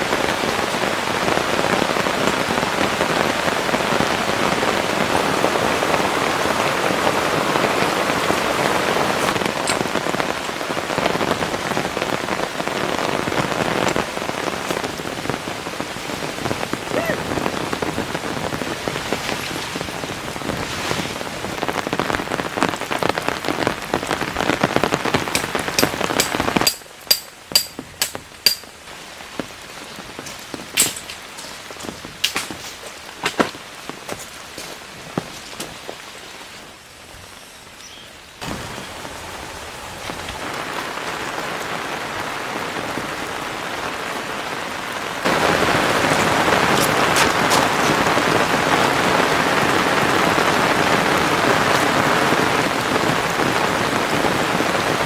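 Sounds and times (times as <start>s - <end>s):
heavy rain pouring: 0.0s - 55.0s.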